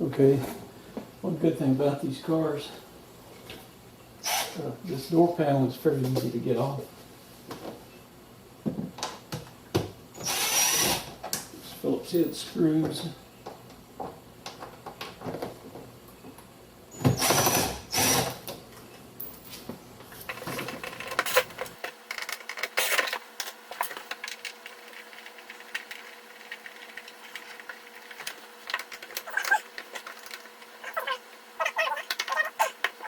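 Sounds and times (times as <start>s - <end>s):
cordless drill whirring: 10.2s - 10.9s
handling clicks and rattles: 20.3s - 33.0s.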